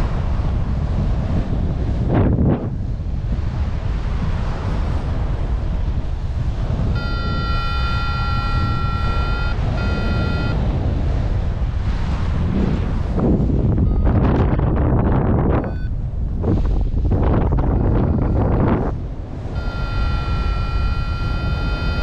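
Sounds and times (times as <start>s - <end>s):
wind buffeting microphone: 0.0s - 22.0s
high electronic tone: 7.0s - 10.6s, 19.6s - 22.0s.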